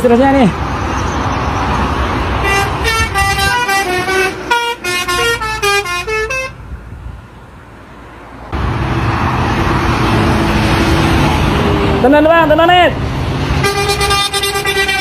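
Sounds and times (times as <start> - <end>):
engine and road noise: 0.0 - 15.0
multi-tone musical horn: 2.4 - 6.6, 13.6 - 15.0.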